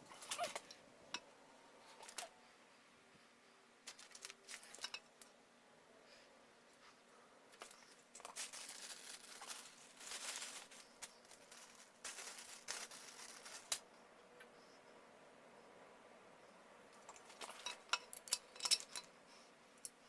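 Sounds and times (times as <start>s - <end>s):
hand tools and parts clinking: 3.9s - 5.3s, 7.5s - 13.9s, 16.9s - 19.2s.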